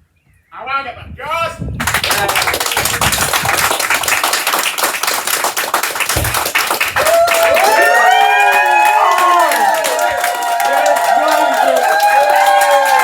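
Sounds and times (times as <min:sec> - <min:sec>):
group applauding: 0:01.8 - 0:13.0
voices cheering: 0:06.9 - 0:13.0.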